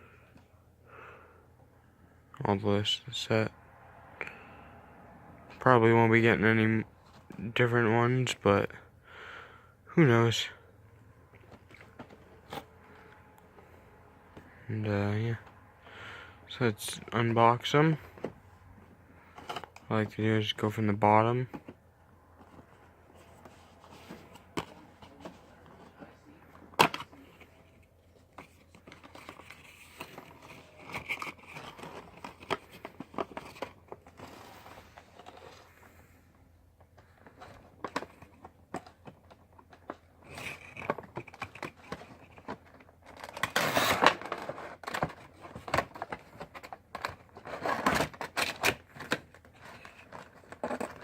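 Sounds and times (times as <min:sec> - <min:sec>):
cardboard and plastic crinkling: 0:22.4 - 0:36.0, 0:37.0 - 0:51.0.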